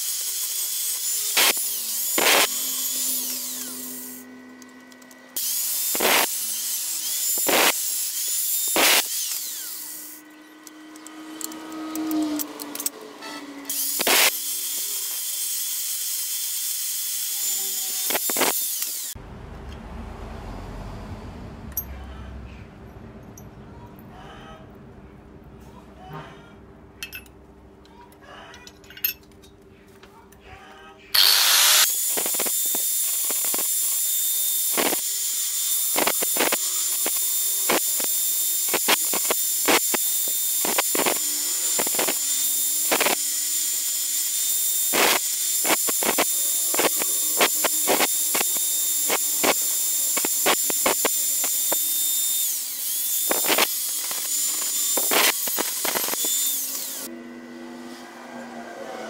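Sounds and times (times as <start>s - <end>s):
high-pitched power tool whine: 0.0s - 19.2s, 31.2s - 59.0s
sharp clicks and scrapes: 13.7s - 14.9s, 35.9s - 42.2s, 44.8s - 51.9s, 52.8s - 57.0s.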